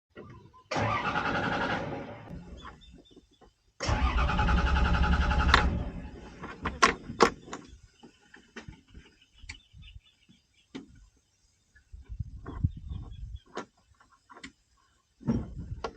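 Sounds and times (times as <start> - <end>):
diesel engine chugging: 3.9 - 6.4.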